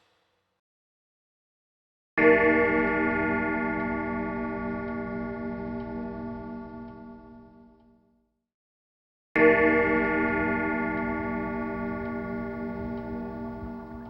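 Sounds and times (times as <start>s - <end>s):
deep clock bell ringing: 2.2s - 7.8s, 9.4s - 14.0s
faint clock ticking: 9.6s - 14.0s.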